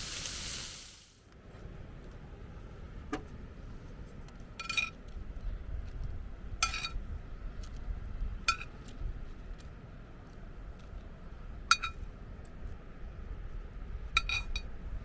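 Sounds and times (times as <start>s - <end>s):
low steady rumble: 1.3s - 15.0s.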